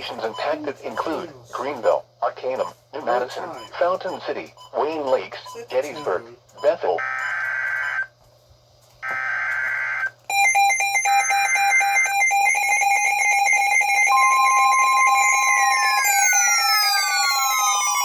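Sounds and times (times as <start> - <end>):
steady warning tone: 5.0 - 8.1, 9.0 - 18.0
weather radio alarm beeps: 9.0 - 16.7
falling siren-like sweeps: 13.1 - 18.0.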